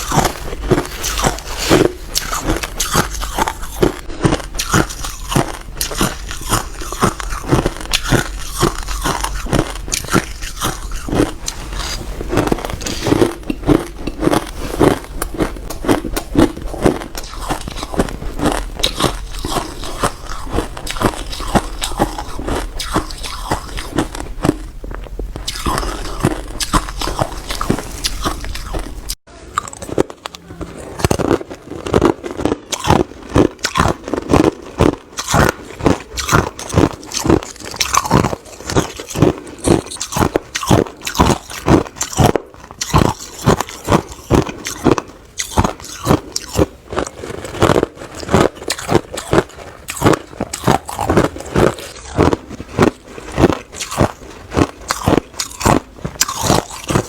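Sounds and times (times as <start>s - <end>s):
ice being chewed: 0.0s - 57.0s.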